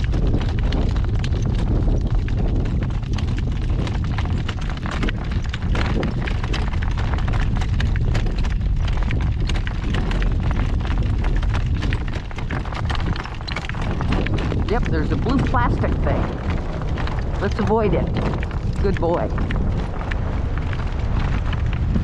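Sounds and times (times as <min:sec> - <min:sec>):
cart jolting over rough ground: 0:00.0 - 0:22.0
horse hoofbeats: 0:00.0 - 0:22.0
wind buffeting microphone: 0:00.0 - 0:22.0.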